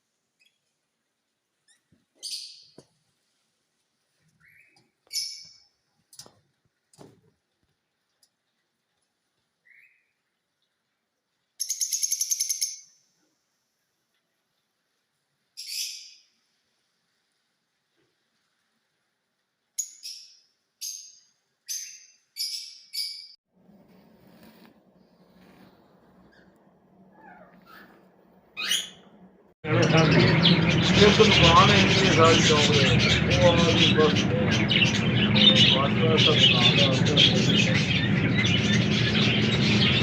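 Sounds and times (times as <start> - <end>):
parakeet screeching calls: 28.6 - 29.0
parakeets calling harshly: 28.6 - 29.0, 29.7 - 40.0.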